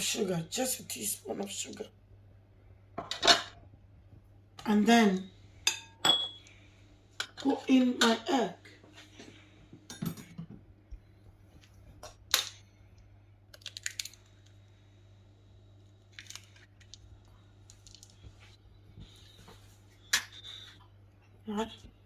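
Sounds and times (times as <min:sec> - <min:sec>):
egg cracking on a bowl: 0:13.5 - 0:14.6, 0:16.1 - 0:18.3.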